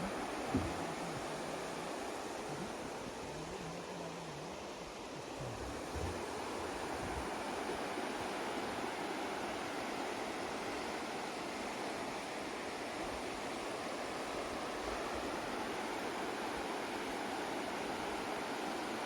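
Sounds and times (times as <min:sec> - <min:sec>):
river water rushing: 0:00.0 - 0:19.0.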